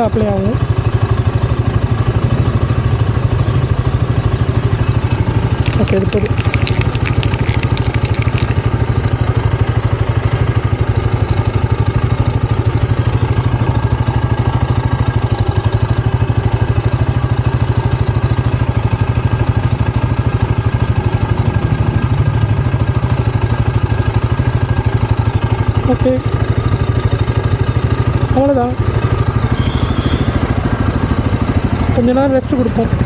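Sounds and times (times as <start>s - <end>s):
motorcycle engine idling: 0.0s - 33.0s.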